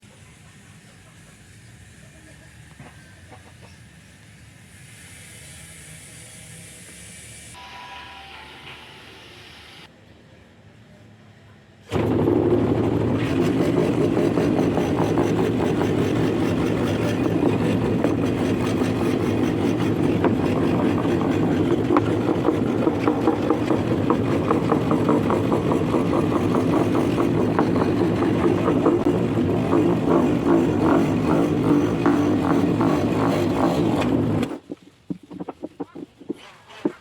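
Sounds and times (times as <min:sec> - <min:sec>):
scroll saw cutting wood: 0:11.9 - 0:37.0.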